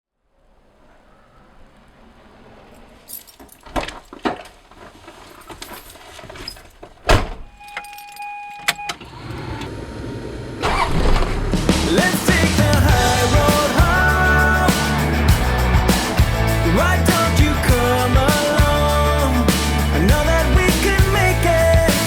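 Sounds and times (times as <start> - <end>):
car door shutting: 7.0 - 9.8
car engine rumbling: 9.1 - 22.0
music: 11.7 - 22.0.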